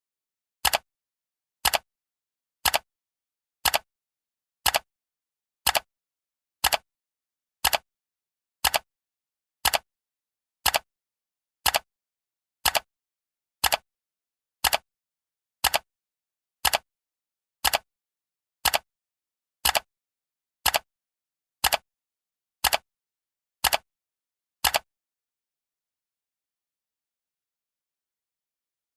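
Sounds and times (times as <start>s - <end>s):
timer ticking: 0.6s - 0.8s, 1.6s - 1.8s, 2.6s - 2.9s, 3.6s - 3.9s, 4.6s - 4.9s, 5.7s - 5.9s, 6.6s - 6.8s, 7.6s - 7.8s, 8.6s - 8.9s, 9.6s - 9.8s, 10.6s - 10.9s, 11.6s - 11.9s, 12.6s - 12.9s, 13.6s - 13.8s, 14.6s - 14.8s, 15.6s - 15.9s, 16.6s - 16.8s, 17.6s - 17.9s, 18.6s - 18.9s, 20.6s - 20.9s, 21.6s - 21.8s, 22.6s - 22.8s, 23.6s - 23.8s, 24.6s - 24.9s.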